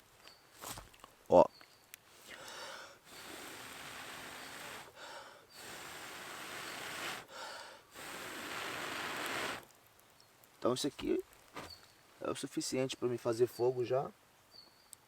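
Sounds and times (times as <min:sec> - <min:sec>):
quick breaths drawn in: 0:02.1 - 0:09.6
person blowing on embers: 0:02.1 - 0:09.8.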